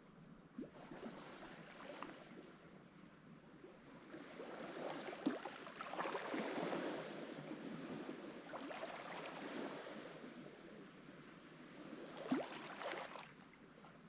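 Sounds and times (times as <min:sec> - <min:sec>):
waves breaking on shore: 0:04.1 - 0:13.4
sharp water splash: 0:12.2 - 0:13.4.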